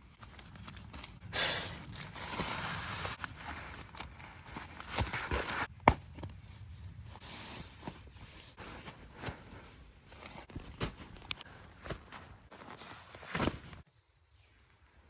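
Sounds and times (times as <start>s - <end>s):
camping gear knocks and rustles: 3.1s - 6.5s, 7.3s - 13.9s.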